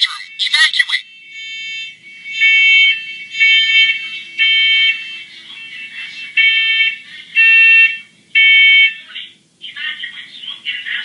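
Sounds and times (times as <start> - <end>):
smoke alarm beeps: 0.2 - 9.0.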